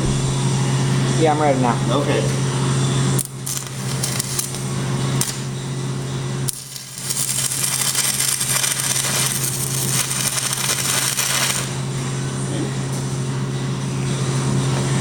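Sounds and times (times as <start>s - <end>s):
steady low hum: 0.0s - 15.0s
welding arc crackling sizzle: 2.9s - 12.0s.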